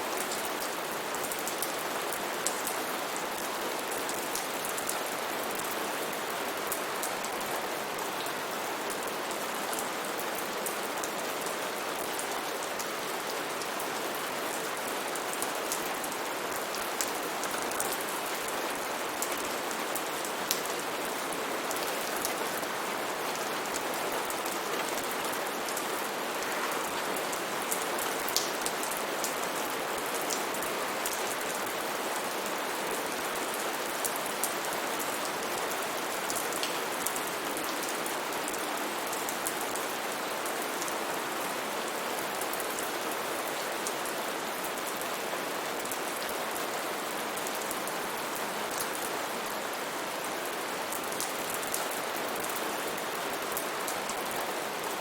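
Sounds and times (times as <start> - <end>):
raindrops pattering on a surface: 26.4 - 29.5.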